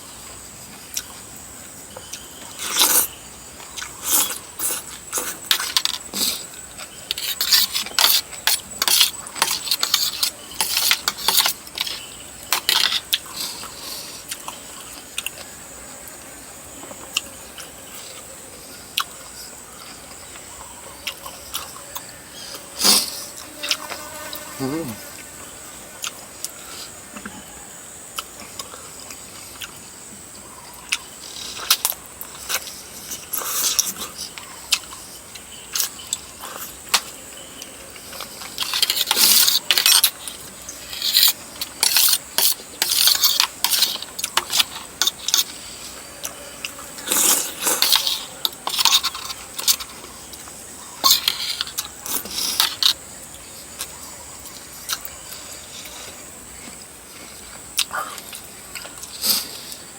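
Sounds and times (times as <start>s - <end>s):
chewing and slurping: 0.2s - 15.6s, 28.1s - 59.9s.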